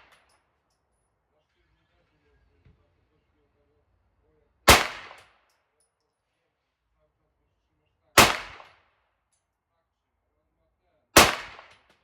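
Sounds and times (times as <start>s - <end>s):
gunshots: 4.7s - 5.3s, 8.2s - 8.8s, 11.2s - 11.9s.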